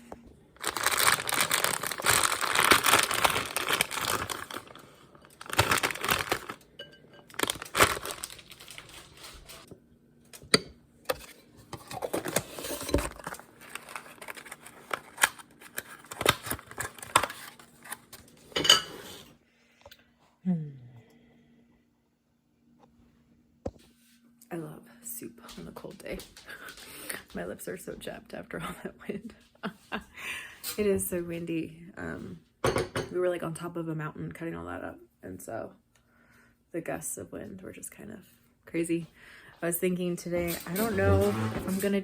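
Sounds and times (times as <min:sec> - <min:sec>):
crinkling and rustling: 0:00.6 - 0:06.7, 0:07.3 - 0:09.7, 0:11.1 - 0:18.6, 0:40.4 - 0:42.0.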